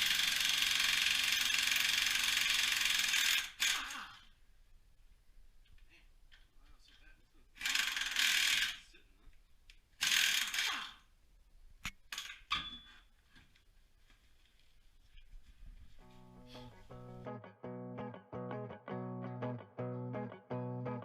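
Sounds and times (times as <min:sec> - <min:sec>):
ratchet wrench spinning: 0:00.0 - 0:03.8, 0:07.6 - 0:08.8, 0:10.0 - 0:10.8.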